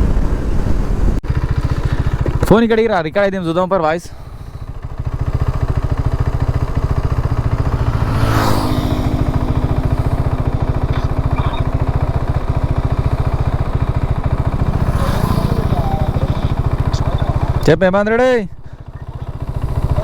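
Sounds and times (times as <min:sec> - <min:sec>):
motorcycle engine running: 0:00.1 - 0:20.0
brief rushing swell: 0:06.9 - 0:17.6.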